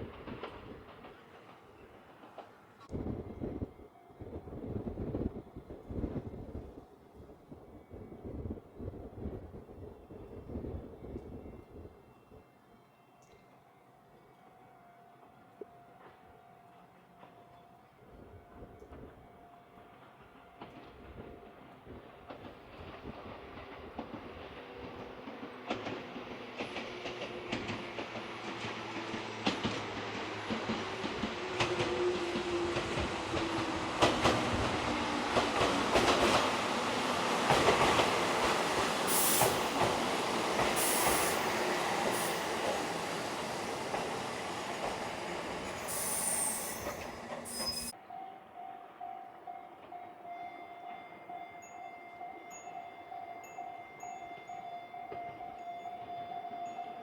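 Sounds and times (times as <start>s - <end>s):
wheels clicking over rail joints: 0.0s - 2.9s, 20.6s - 48.0s
electric train passing: 0.0s - 57.0s
high wheel squeals: 40.7s - 48.0s.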